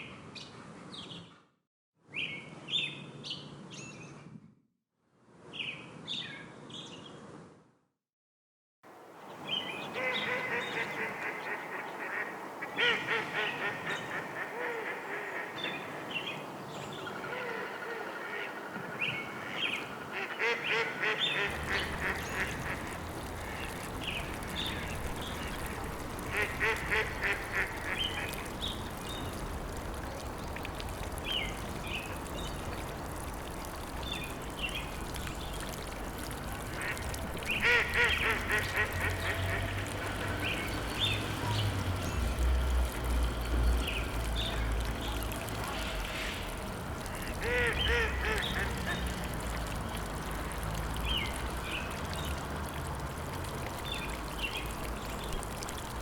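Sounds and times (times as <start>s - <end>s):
ducks quacking: 19.4s - 28.6s, 36.7s - 40.6s, 47.1s - 49.2s.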